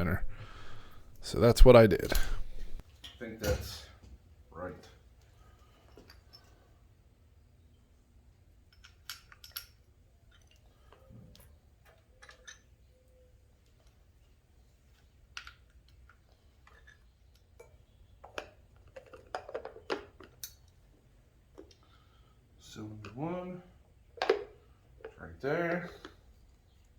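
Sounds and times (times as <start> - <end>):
low steady hum: 0.0 - 2.8.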